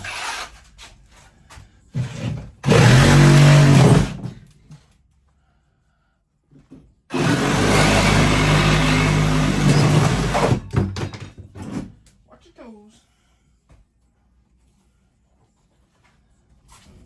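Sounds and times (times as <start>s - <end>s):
motor running loudly: 2.6s - 4.1s, 7.1s - 10.6s
knocks and clatters: 9.6s - 11.9s.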